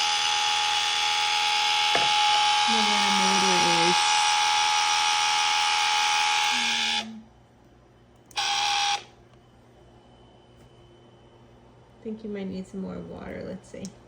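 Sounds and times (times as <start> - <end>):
water pump buzzing: 0.0 - 7.2, 8.3 - 9.1.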